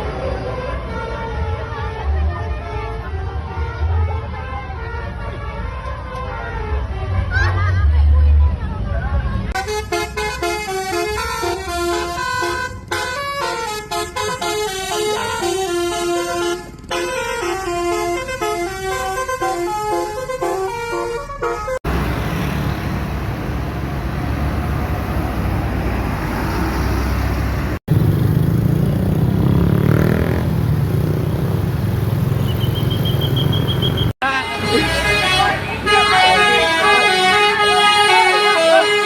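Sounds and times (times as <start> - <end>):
road traffic roar: 0.0 - 39.0
low bus engine rumble: 6.8 - 29.5, 30.4 - 39.0
musical bus horn melody: 9.5 - 22.6, 33.0 - 39.0.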